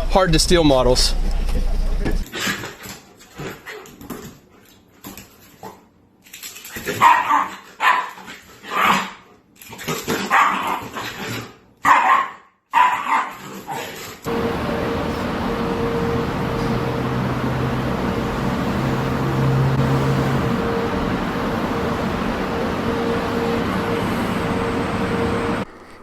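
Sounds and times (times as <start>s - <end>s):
dog barking: 6.9s - 9.2s, 10.2s - 11.0s, 11.8s - 13.4s.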